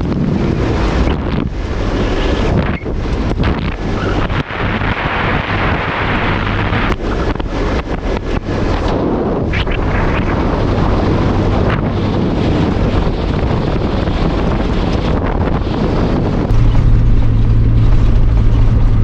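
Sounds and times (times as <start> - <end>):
wind buffeting microphone: 0.0 - 19.0
vehicle engine under load: 15.8 - 19.0.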